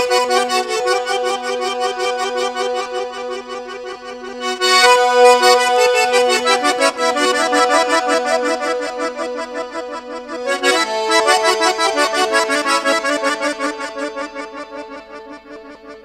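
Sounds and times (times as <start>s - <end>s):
accordion folk music: 0.0s - 16.0s.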